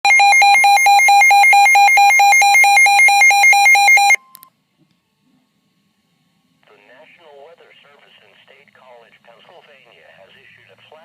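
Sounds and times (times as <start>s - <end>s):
pulsing electronic alarm tone: 0.0s - 4.2s.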